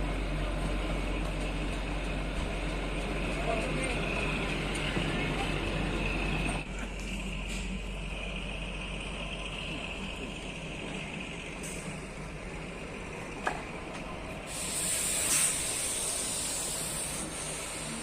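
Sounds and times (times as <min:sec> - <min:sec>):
train rumble with high whine: 0:00.0 - 0:18.0
loud hiss: 0:14.4 - 0:18.0.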